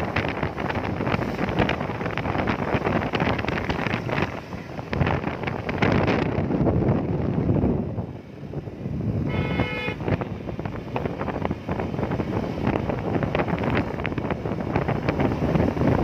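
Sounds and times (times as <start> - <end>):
wind noise on microphone: 0.0 - 16.0
vehicle horn honk: 9.2 - 10.2.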